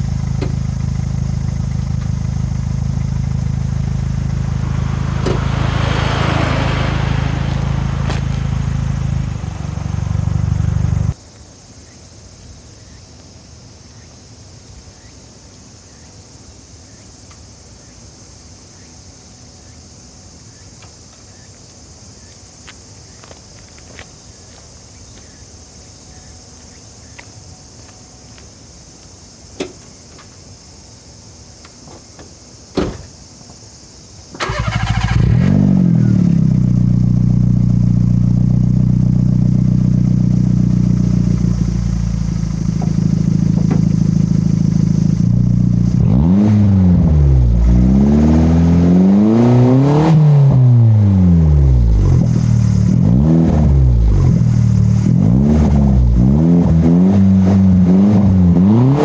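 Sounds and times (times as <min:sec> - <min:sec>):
car engine idling: 0:00.0 - 0:11.2, 0:34.4 - 0:46.4
engine revving: 0:01.2 - 0:11.2, 0:34.4 - 0:59.0.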